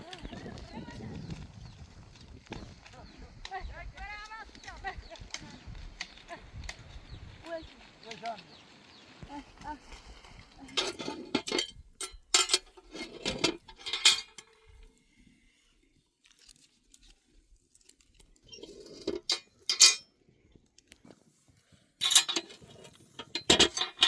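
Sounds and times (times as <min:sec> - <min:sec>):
kitchenware clattering: 0:10.7 - 0:14.5, 0:19.0 - 0:20.1, 0:22.0 - 0:22.6, 0:23.2 - 0:24.0.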